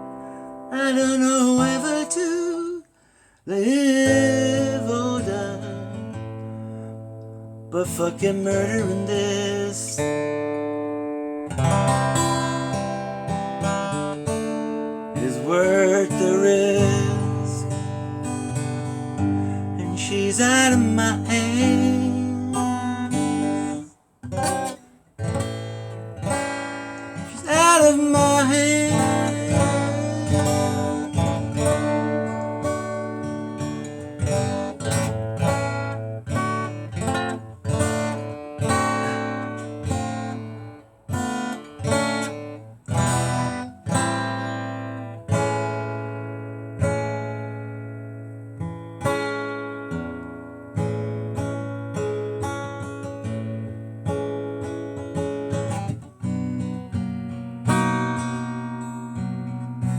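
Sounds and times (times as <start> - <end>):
acoustic guitar strumming: 0.0 - 59.9.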